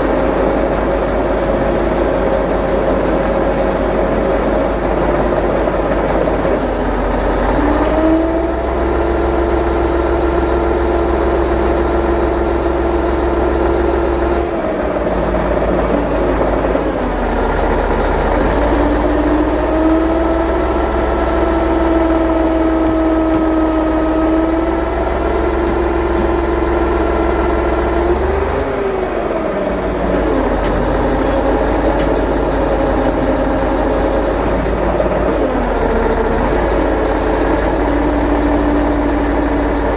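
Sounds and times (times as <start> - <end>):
vehicle engine revving: 30.2 - 39.9.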